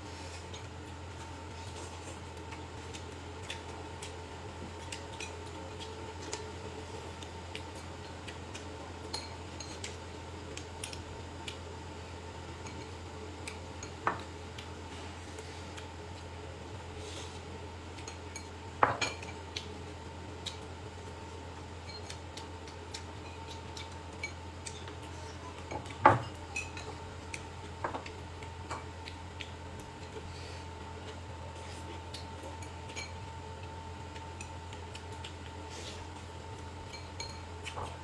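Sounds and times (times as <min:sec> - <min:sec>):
steady low hum: 0:00.0 - 0:38.0
dishes and utensils clinking: 0:36.9 - 0:38.0.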